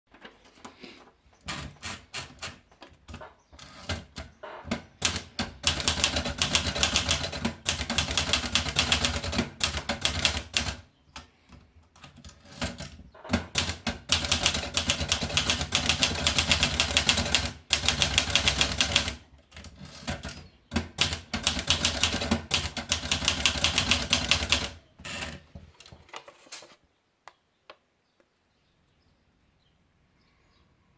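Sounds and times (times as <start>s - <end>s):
typewriter keys clacking: 1.5s - 10.8s, 12.0s - 24.8s.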